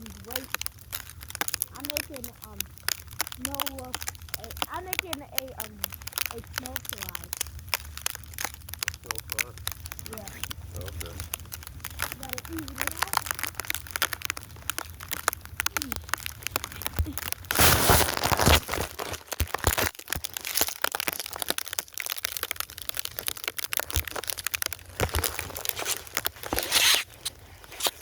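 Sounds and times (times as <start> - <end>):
snow crunching: 0.0 - 28.0
scraping rushes: 15.4 - 19.8, 24.5 - 28.0.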